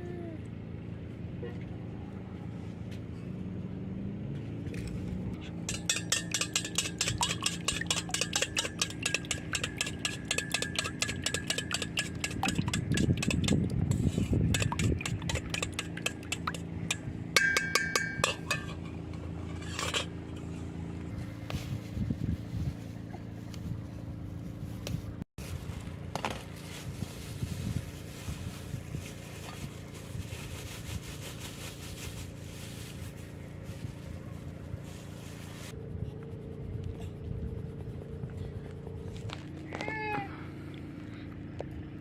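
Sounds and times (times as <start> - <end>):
metal utensil beating metal bowl: 5.4 - 20.1.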